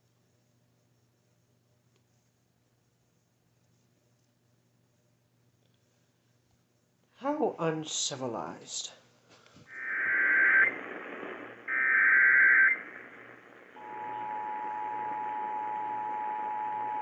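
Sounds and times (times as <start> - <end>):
buzzy digital data bursts: 9.7 - 15.1
radio static hiss: 9.7 - 17.0
two-tone attention signal: 13.8 - 17.0.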